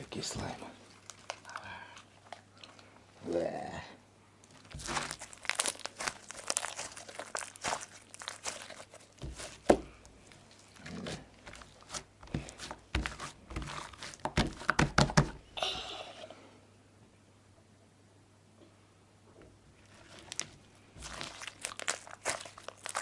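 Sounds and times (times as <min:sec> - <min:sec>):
slime crackling and popping: 0:04.5 - 0:15.3, 0:20.3 - 0:23.0.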